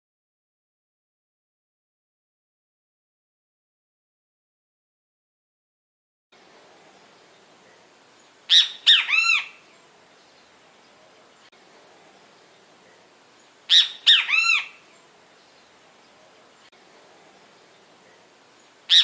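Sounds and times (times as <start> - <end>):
bird calling three notes: 13.7 - 14.9.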